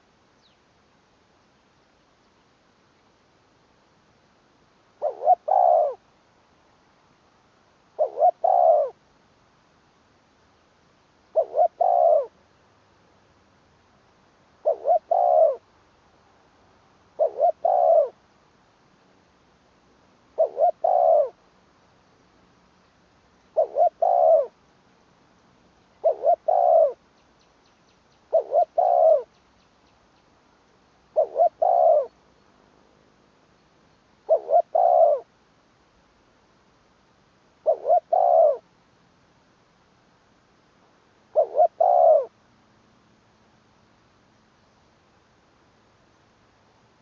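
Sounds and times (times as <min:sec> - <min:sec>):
dove cooing: 0:05.0 - 0:06.0, 0:07.9 - 0:09.0, 0:11.3 - 0:12.4, 0:14.6 - 0:15.7, 0:17.2 - 0:18.2, 0:20.4 - 0:21.4, 0:23.5 - 0:24.6, 0:25.9 - 0:27.0, 0:28.3 - 0:29.4, 0:31.1 - 0:32.2, 0:34.2 - 0:35.3, 0:37.6 - 0:38.6, 0:41.3 - 0:42.3.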